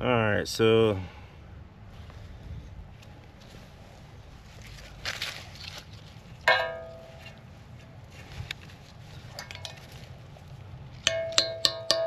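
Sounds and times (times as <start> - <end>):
hammer striking ringing steel: 6.5 - 7.3, 11.0 - 12.0.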